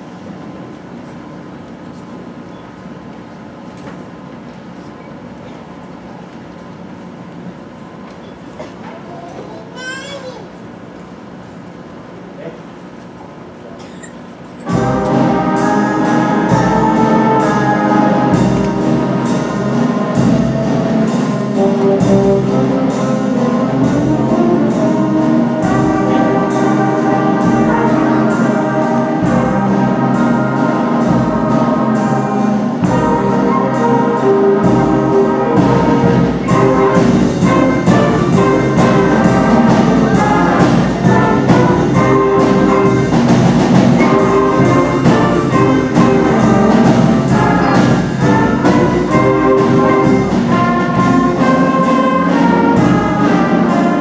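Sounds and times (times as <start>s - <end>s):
band playing swinging tune: 14.4s - 54.0s.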